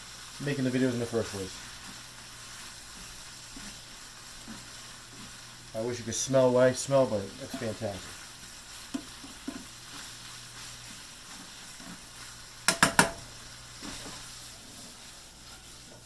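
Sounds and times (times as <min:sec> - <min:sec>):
bacon sizzling in a frying pan: 0:00.0 - 0:16.0
utensil clattering against pan: 0:12.7 - 0:13.2.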